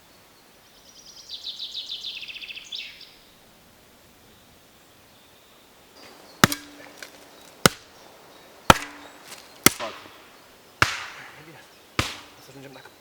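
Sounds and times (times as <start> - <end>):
axe chopping wood: 6.0 - 8.0, 8.7 - 12.5.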